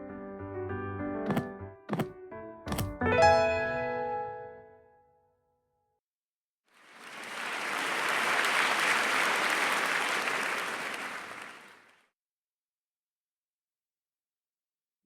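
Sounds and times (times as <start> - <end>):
audience applause: 6.8 - 12.1.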